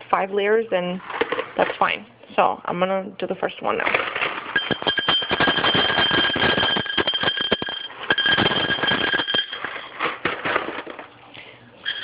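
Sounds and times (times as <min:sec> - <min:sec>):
utensil clattering and scraping: 0:03.8 - 0:11.1.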